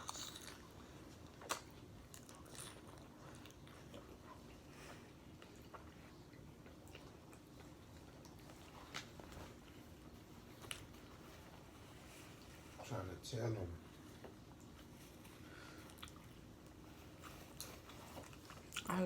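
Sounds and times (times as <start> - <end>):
chewing crunchy chips: 0.0 - 9.8, 15.6 - 19.0.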